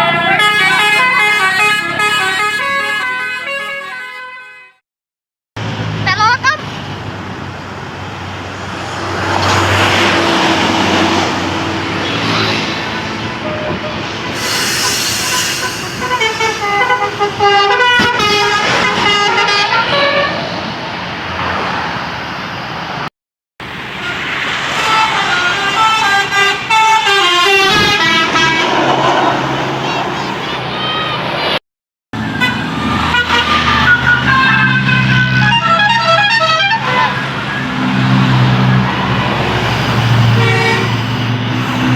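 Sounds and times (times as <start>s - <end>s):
bus and traffic noise: 0.0s - 4.8s, 5.6s - 41.9s
multi-tone bus horn melody: 0.0s - 4.8s, 11.6s - 20.5s, 23.9s - 29.4s, 32.2s - 37.8s, 38.8s - 41.9s.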